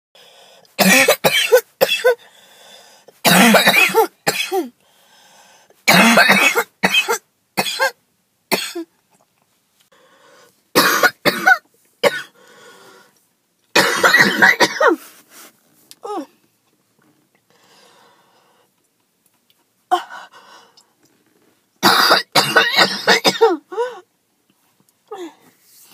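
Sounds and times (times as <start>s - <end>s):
woman hacking cough: 0.8s - 2.2s, 3.3s - 4.7s, 5.9s - 8.9s, 10.8s - 12.3s, 13.8s - 15.0s, 21.8s - 23.6s.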